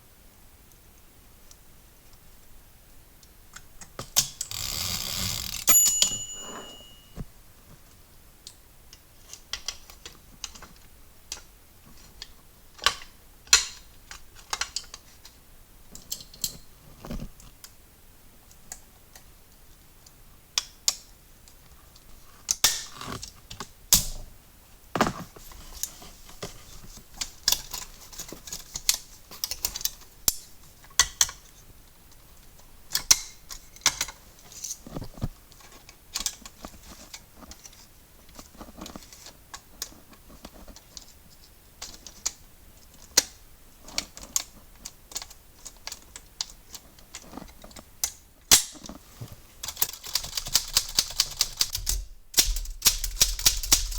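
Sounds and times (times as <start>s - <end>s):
brief ringing tone: 5.7s - 7.2s
typewriter parts clicking and tapping: 49.6s - 53.9s.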